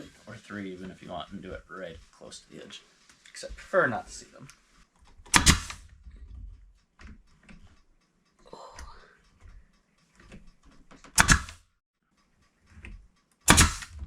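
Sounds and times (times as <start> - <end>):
handling knocks and clicks: 4.5 - 8.0, 9.2 - 11.6, 12.2 - 14.0
nail gun firing: 5.3 - 5.8, 11.1 - 11.6, 13.5 - 14.0.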